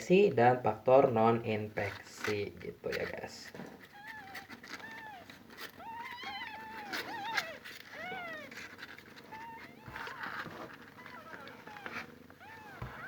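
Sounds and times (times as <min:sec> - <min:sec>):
kitten mewing: 0:03.8 - 0:13.0.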